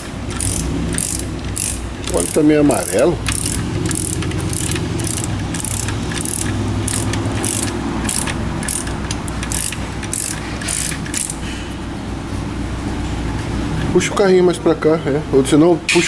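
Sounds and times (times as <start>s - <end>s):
ratchet wrench clicking: 0.0s - 11.5s.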